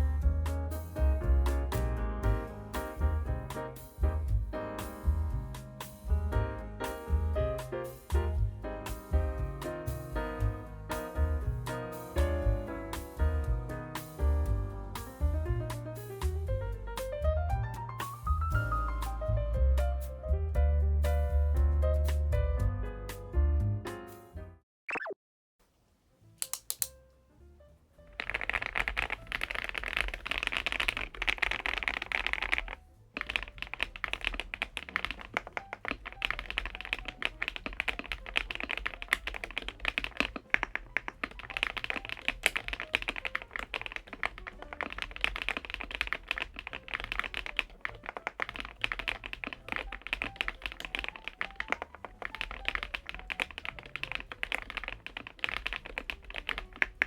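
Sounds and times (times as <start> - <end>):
mechanical keyboard key clacks: 28.2 - 57.0.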